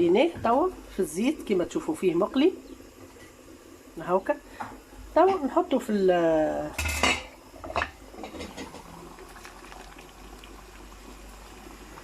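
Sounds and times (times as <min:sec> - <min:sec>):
sauce bubbling in a pot: 0:00.0 - 0:12.0
utensil clanking against pot: 0:06.7 - 0:08.9.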